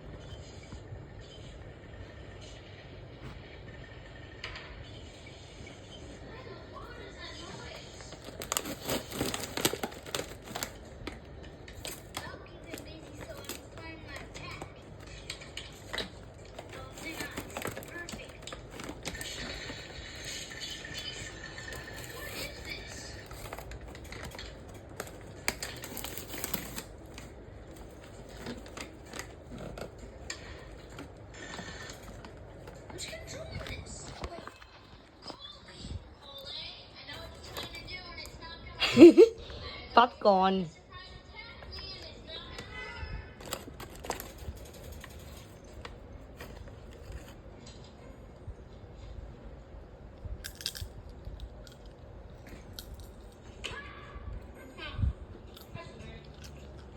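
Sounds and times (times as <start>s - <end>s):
popcorn popping in bag: 6.2s - 38.3s, 41.4s - 47.8s.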